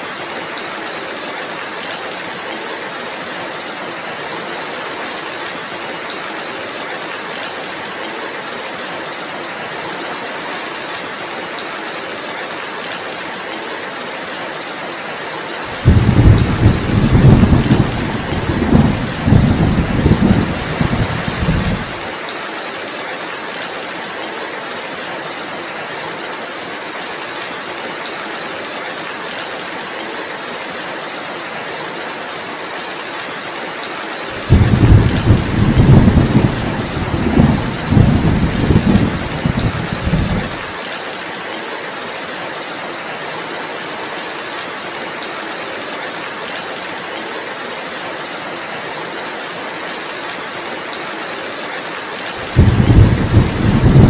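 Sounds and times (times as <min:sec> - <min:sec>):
heavy rain hissing: 0:15.6 - 0:22.2, 0:34.2 - 0:40.8, 0:52.3 - 0:54.0
loud low thunder rumble: 0:15.8 - 0:22.0, 0:34.4 - 0:40.7, 0:52.5 - 0:54.0.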